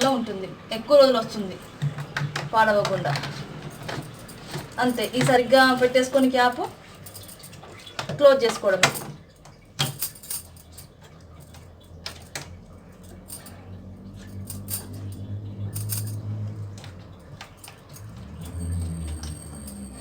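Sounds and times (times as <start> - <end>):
low hum: 12.6 - 20.0.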